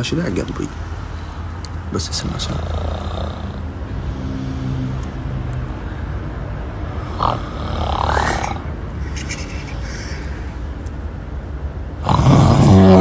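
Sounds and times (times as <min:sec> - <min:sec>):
steady low hum: 0:00.0 - 0:13.0
person snoring: 0:02.3 - 0:05.5, 0:06.9 - 0:10.6, 0:12.0 - 0:13.0.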